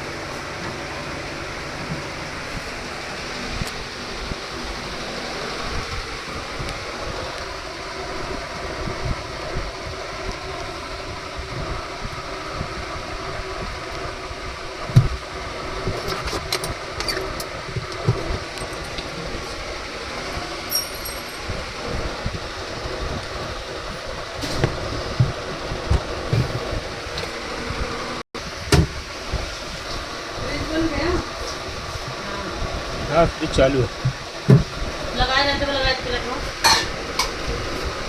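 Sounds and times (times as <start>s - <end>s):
washing machine running: 0.0s - 38.0s.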